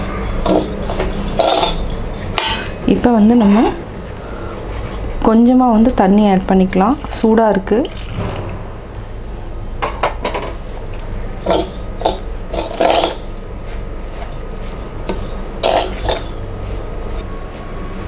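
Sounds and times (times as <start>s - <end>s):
spoon scraping a metal bowl: 0.0s - 2.8s, 15.1s - 16.4s.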